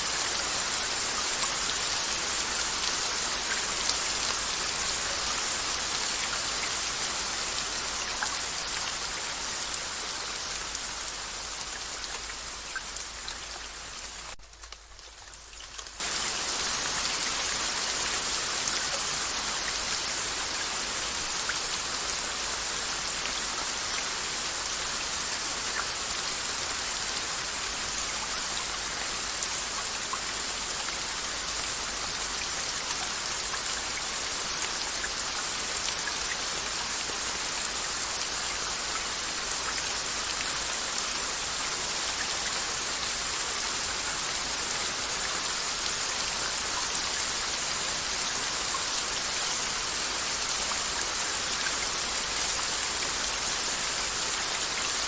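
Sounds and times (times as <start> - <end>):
steady rain falling: 0.0 - 55.0
raindrop ticks: 14.3 - 16.0.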